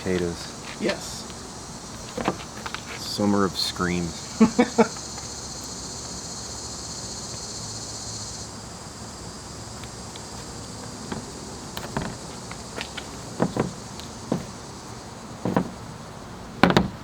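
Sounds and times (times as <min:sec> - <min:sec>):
cicadas buzzing: 0:00.0 - 0:17.0
light clicks and knocks: 0:02.0 - 0:03.0, 0:09.8 - 0:14.6, 0:15.4 - 0:15.8.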